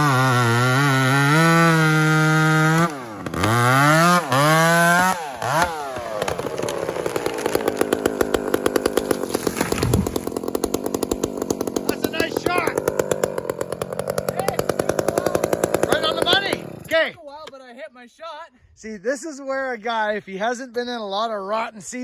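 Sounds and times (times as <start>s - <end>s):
chainsaw revving and idling: 0.0s - 17.2s.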